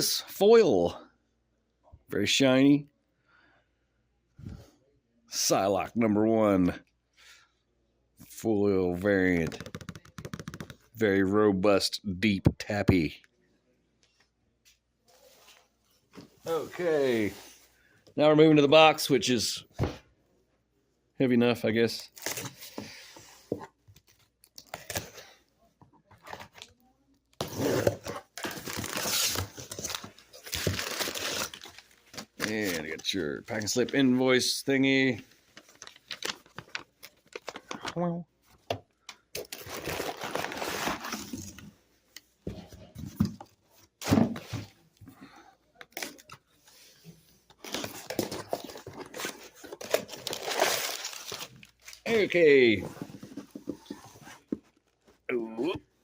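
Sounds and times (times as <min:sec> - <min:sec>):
tape tearing and packing crumpling: 0:27.4 - 0:33.0, 0:39.4 - 0:41.6, 0:47.6 - 0:52.0.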